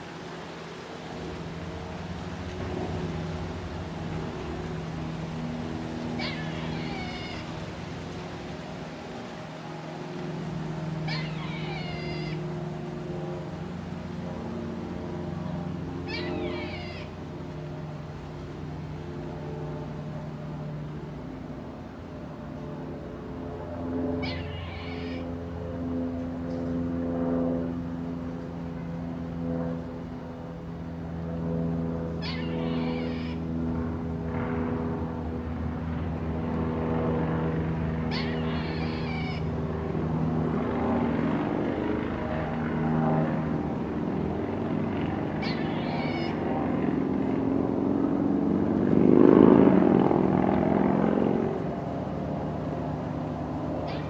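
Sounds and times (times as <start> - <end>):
droning hum: 0.0 - 54.0
high animal call: 5.9 - 8.0, 10.8 - 12.7, 15.4 - 17.5, 24.2 - 25.5, 32.1 - 33.6, 38.0 - 39.6, 45.1 - 46.8, 53.8 - 54.0
passing vehicle engine: 43.4 - 54.0.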